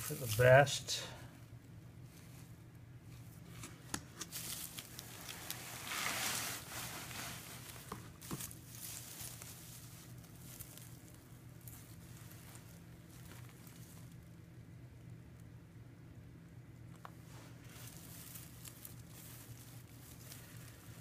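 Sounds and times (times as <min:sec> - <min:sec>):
loud rustle: 0:04.3 - 0:14.2, 0:17.3 - 0:21.0.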